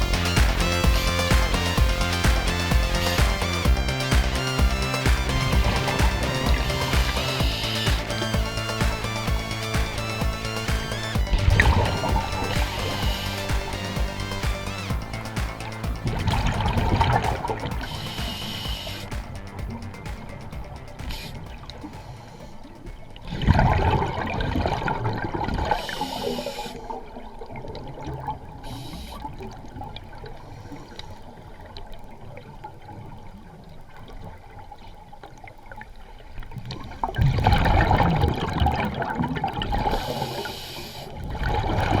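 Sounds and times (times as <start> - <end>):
underwater breathing noise: 39.8 - 41.3.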